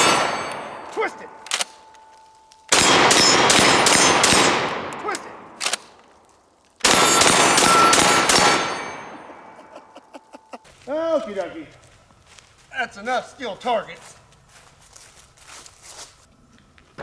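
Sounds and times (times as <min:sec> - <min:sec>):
shotgun shots echoing: 0:00.0 - 0:01.9, 0:02.7 - 0:06.0, 0:06.8 - 0:09.7
sharp clicks of shotgun: 0:02.7 - 0:06.2.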